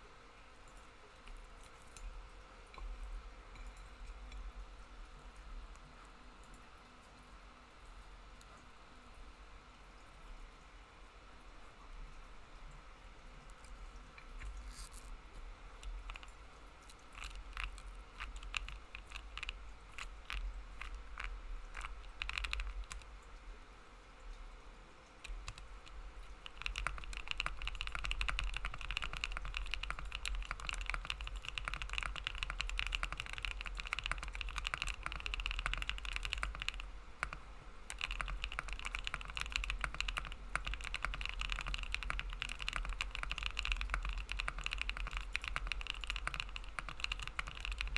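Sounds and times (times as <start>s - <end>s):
mechanical keyboard typing: 15.8s - 23.2s, 25.3s - 47.9s.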